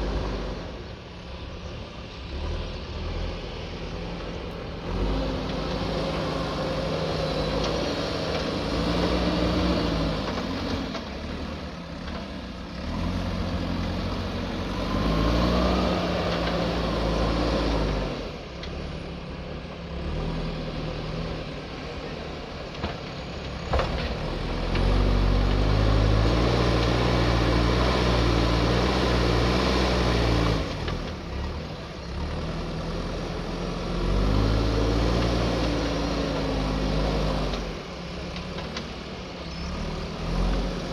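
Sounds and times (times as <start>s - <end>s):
diesel engine revving under load: 0.0s - 40.9s.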